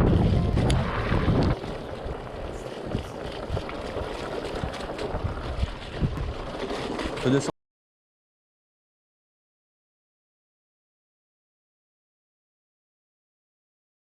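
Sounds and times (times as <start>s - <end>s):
bike tyres rolling: 0.0s - 7.5s
wind buffeting microphone: 0.0s - 7.5s.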